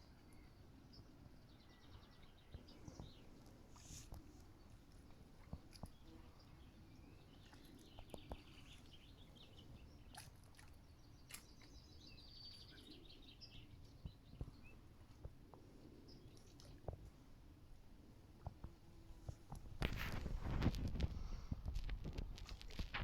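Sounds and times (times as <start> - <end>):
songbirds chirping: 0.0 - 23.0.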